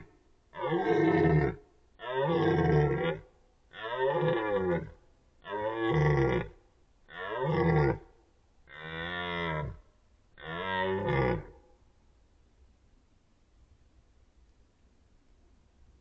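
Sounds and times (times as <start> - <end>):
deer stag roaring: 0.0 - 8.1, 10.4 - 11.5.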